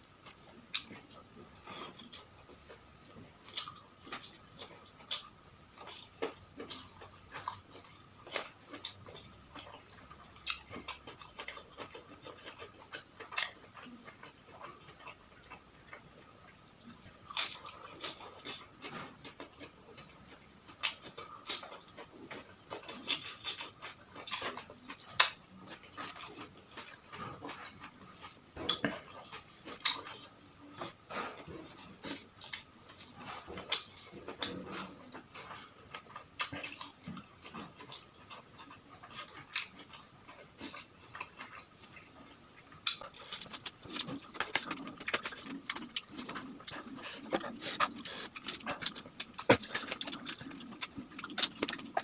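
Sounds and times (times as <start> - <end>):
chewing crunches and smacks: 0.1 - 52.0.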